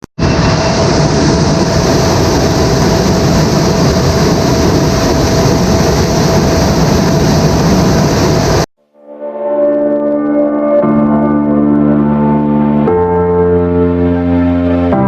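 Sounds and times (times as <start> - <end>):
heavy farm machinery running: 0.2 - 8.7.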